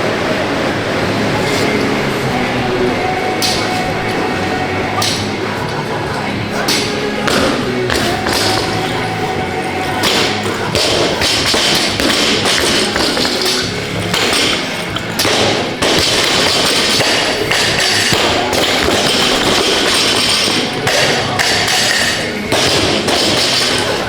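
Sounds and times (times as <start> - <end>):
music playing: 0.0 - 24.0.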